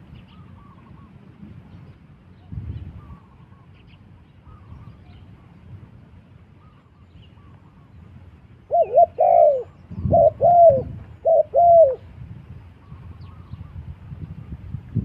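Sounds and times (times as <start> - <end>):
dove cooing: 8.7 - 12.1.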